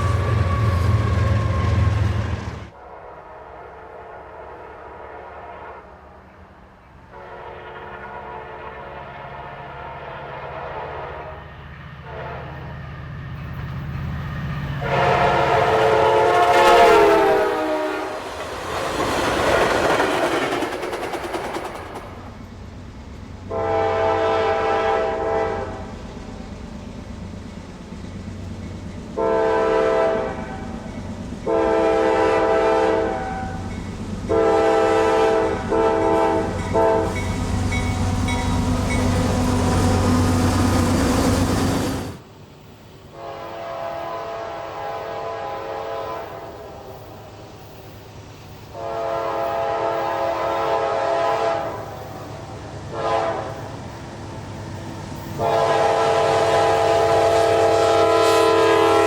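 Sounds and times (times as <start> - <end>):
locomotive air horn: 0.0 - 6.2, 7.1 - 12.8, 14.8 - 18.3, 23.5 - 25.9, 29.2 - 30.8, 31.4 - 33.7, 34.3 - 42.2, 43.1 - 46.9, 48.7 - 53.8, 55.3 - 59.0
train rumble and rail clatter: 0.0 - 59.0.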